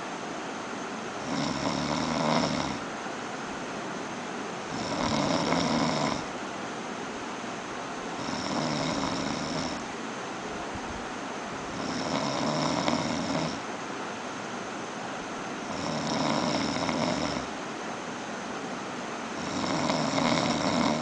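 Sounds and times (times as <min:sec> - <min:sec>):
person snoring: 0:01.2 - 0:02.8, 0:04.7 - 0:06.3, 0:08.2 - 0:09.8, 0:11.7 - 0:13.6, 0:15.7 - 0:17.5, 0:19.4 - 0:21.0.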